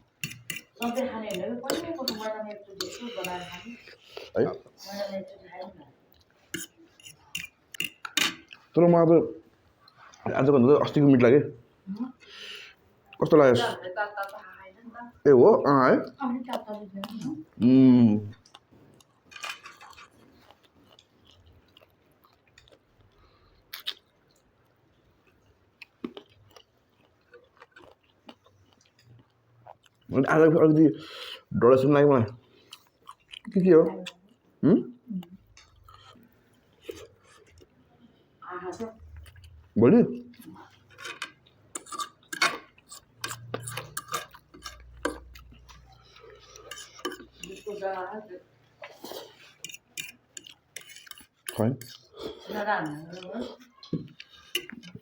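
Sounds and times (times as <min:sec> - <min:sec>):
chewing mouth noises: 0:00.0 - 0:05.0, 0:18.3 - 0:30.1, 0:32.4 - 0:34.5, 0:35.2 - 0:38.2, 0:39.0 - 0:47.7, 0:48.7 - 0:55.0
utensils clicking on plates: 0:00.1 - 0:03.6, 0:06.6 - 0:08.5, 0:40.9 - 0:45.3.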